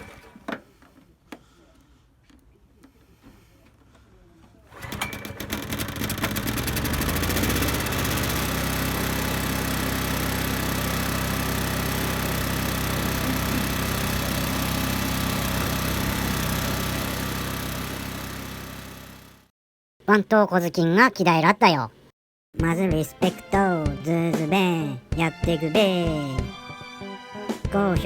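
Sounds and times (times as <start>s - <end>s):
generator engine running: 4.7s - 19.5s.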